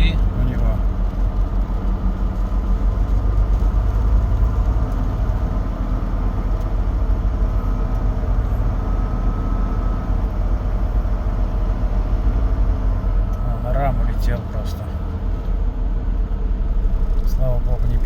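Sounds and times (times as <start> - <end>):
truck diesel engine rumble: 0.0 - 18.0.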